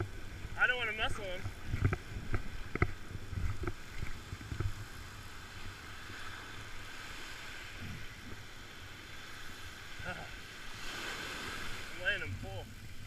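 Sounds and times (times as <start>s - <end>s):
wind buffeting microphone: 0.0s - 9.9s
surf: 0.0s - 13.0s.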